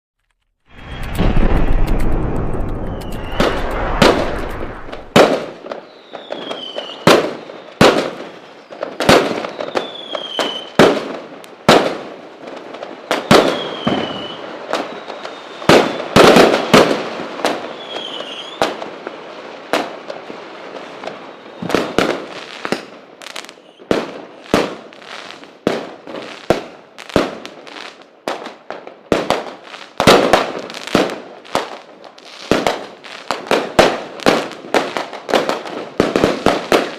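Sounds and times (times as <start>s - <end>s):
fireworks banging: 0.7s - 5.8s
falling firework whistles: 0.7s - 10.8s, 13.1s - 19.3s, 20.7s - 25.5s.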